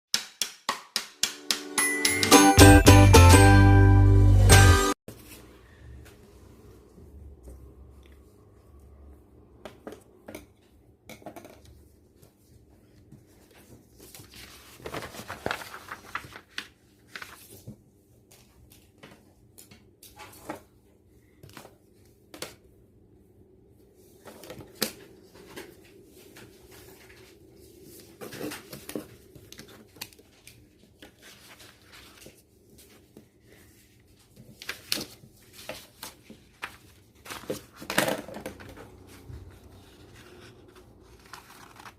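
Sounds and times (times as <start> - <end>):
paper rustling and scraping: 12.2 - 18.9, 24.2 - 41.9.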